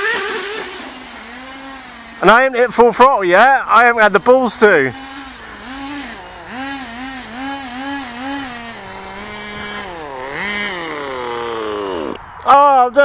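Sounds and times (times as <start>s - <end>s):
small engine revving: 0.0s - 3.0s, 3.8s - 12.4s.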